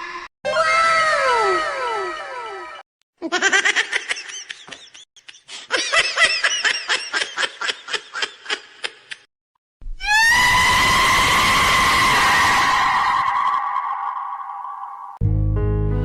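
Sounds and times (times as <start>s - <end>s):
person laughing: 3.2s - 9.3s.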